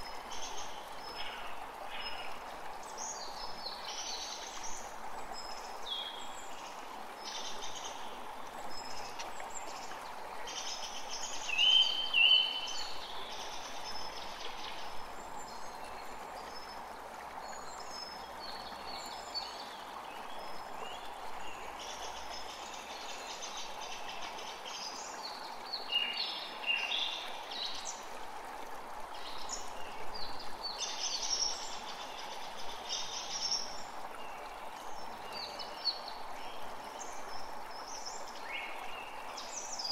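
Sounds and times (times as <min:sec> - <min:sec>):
songbirds singing: 0:00.0 - 0:28.1
creek running: 0:00.0 - 0:39.9.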